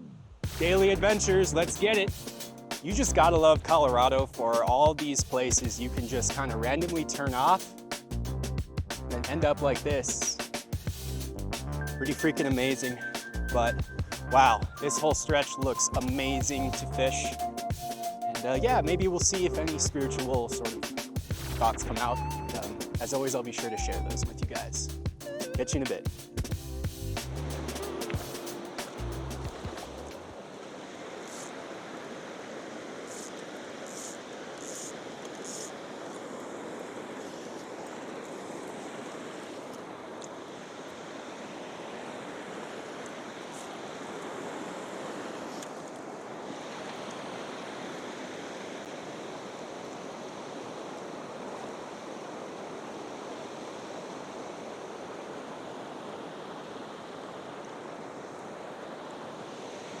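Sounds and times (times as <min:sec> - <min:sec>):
river water rushing: 0:12.1 - 0:13.4, 0:14.2 - 0:16.0, 0:27.5 - 1:00.0
short high chirps: 0:13.0 - 0:18.6.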